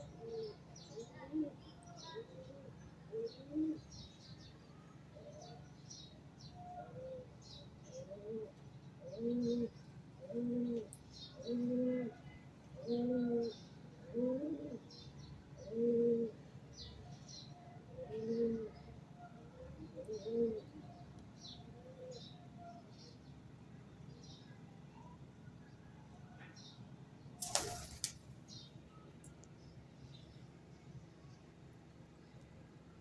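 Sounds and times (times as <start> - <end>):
pigeon cooing: 2.2 - 3.8, 8.0 - 12.2, 12.8 - 14.8, 15.6 - 16.4, 17.9 - 18.9, 19.6 - 20.8.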